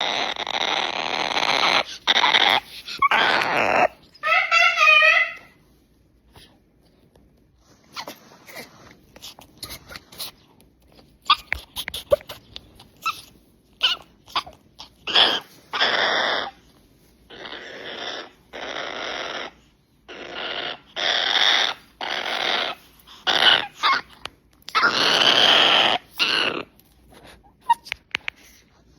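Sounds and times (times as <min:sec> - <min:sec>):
parrot screeching: 0:00.0 - 0:05.6, 0:15.1 - 0:16.6.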